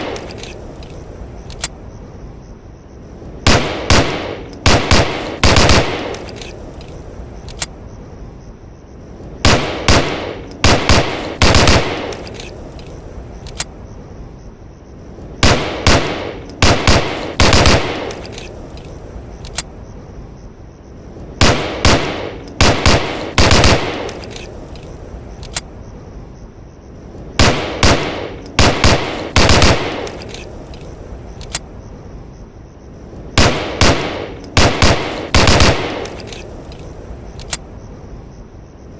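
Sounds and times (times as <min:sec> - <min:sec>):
pistol shots with ringing tail: 0:09.4 - 0:12.3, 0:15.4 - 0:18.2, 0:21.4 - 0:24.2, 0:27.4 - 0:30.2, 0:33.4 - 0:36.2.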